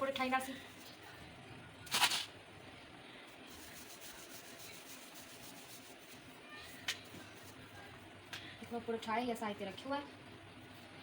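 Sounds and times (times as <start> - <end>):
rolling pin rubbing dough: 3.4 - 8.1.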